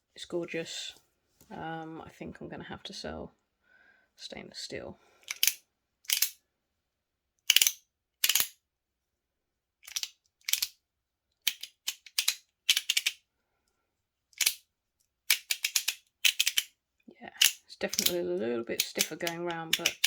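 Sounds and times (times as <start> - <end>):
metal fidget toy clicks: 5.2 - 6.4, 7.5 - 8.6, 9.8 - 10.8, 11.4 - 13.2, 14.4 - 14.6, 15.3 - 16.7, 17.4 - 20.0.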